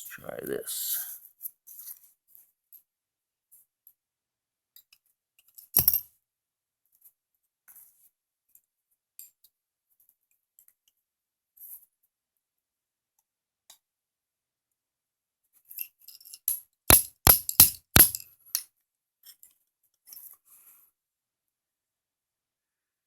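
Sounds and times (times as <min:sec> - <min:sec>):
small metal parts clicking: 0:16.1 - 0:18.2
hammer striking pin punch: 0:16.9 - 0:18.2.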